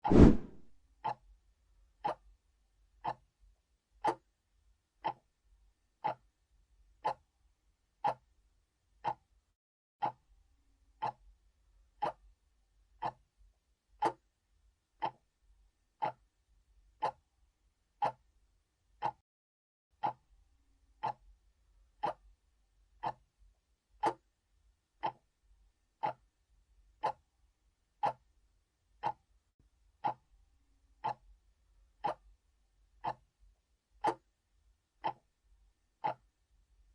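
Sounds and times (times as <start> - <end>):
analog clock ticking: 2.0 - 2.2, 3.0 - 3.2, 4.0 - 4.3, 5.0 - 5.3, 6.0 - 6.3, 7.0 - 7.3, 8.0 - 8.2, 9.0 - 9.2, 11.0 - 11.2, 12.0 - 12.2, 13.0 - 13.2, 14.0 - 14.3, 15.0 - 15.2, 16.0 - 16.2, 17.0 - 17.2, 18.0 - 18.3, 19.0 - 19.2, 20.0 - 20.2, 21.0 - 21.2, 22.0 - 22.3, 23.0 - 23.2, 24.0 - 24.3, 25.0 - 25.2, 26.0 - 26.3, 28.0 - 28.2, 29.0 - 29.3, 30.0 - 30.3, 31.0 - 31.4, 32.0 - 32.3, 33.0 - 33.3, 34.0 - 34.3, 35.0 - 35.3, 36.0 - 36.4.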